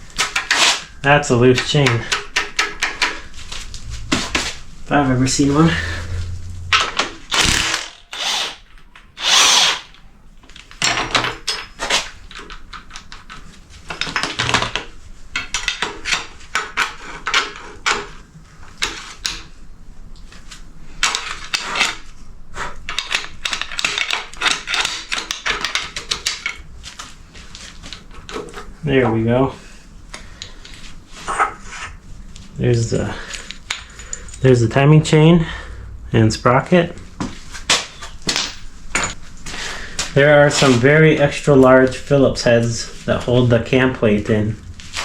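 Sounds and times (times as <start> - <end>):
metal tools clanking: 10.8 - 14.8, 33.0 - 35.6, 37.8 - 39.2.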